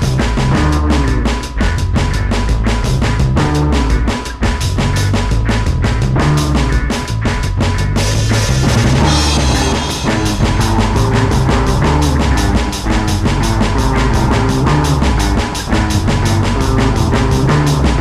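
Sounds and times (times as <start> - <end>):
fast rock music: 0.0 - 18.0
cymbal crash: 8.1 - 13.2.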